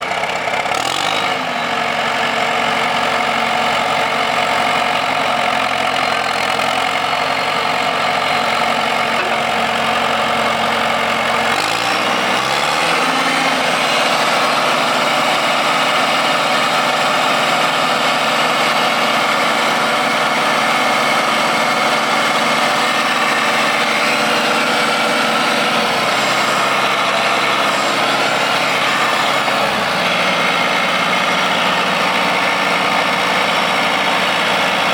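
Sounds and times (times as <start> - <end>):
diesel engine running: 0.0 - 34.9.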